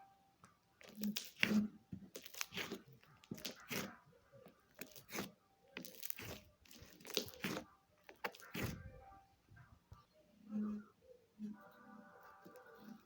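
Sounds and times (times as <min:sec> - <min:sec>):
slime crackling when squeezed: 0:00.8 - 0:03.9, 0:05.8 - 0:08.7.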